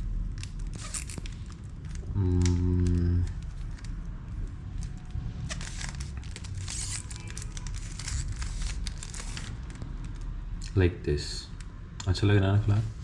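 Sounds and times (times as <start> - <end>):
low background hum: 0.0 - 13.0
puzzle cube clicking and scraping: 5.4 - 9.6.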